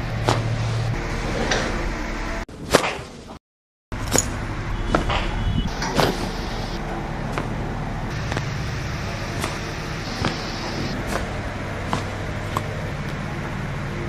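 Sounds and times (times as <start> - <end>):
low hum: 4.0 - 14.0.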